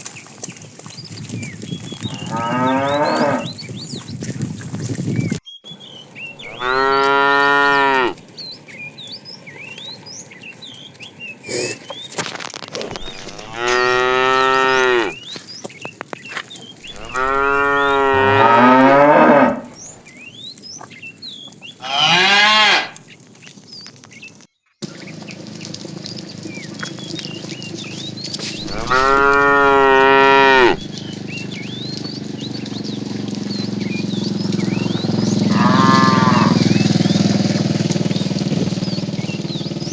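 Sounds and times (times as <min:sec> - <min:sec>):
cows mooing: 0:01.9 - 0:03.7, 0:06.4 - 0:08.2, 0:12.9 - 0:15.2, 0:16.8 - 0:20.0, 0:21.8 - 0:23.0, 0:28.4 - 0:33.2, 0:33.9 - 0:37.2.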